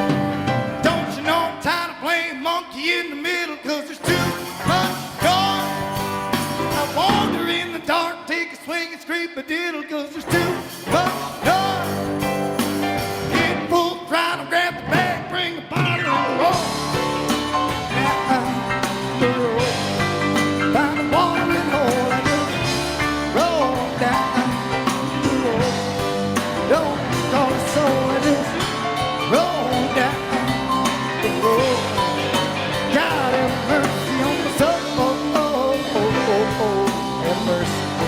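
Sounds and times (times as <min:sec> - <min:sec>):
live rock band playing: 0:00.0 - 0:08.3, 0:10.2 - 0:38.0
lead guitar bending notes: 0:16.0 - 0:38.0.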